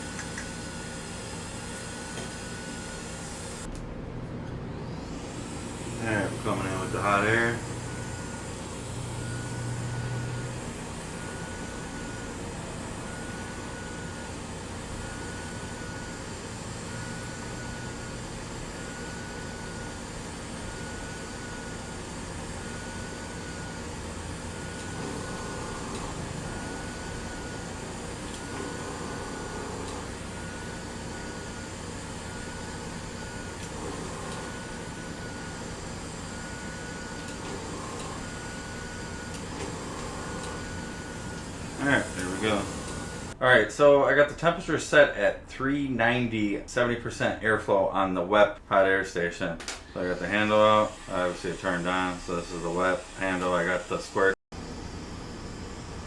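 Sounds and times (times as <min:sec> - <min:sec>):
extractor fan: 0:00.0 - 0:44.6
hot air nozzle rushing: 0:24.5 - 0:43.4.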